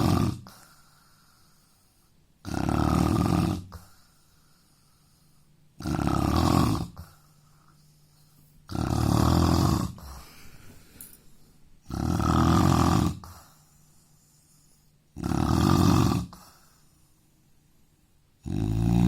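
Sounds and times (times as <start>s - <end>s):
man snoring loudly: 0.0s - 0.5s, 2.4s - 3.8s, 5.8s - 7.0s, 8.7s - 10.1s, 11.9s - 13.4s, 15.2s - 16.4s, 18.4s - 19.0s.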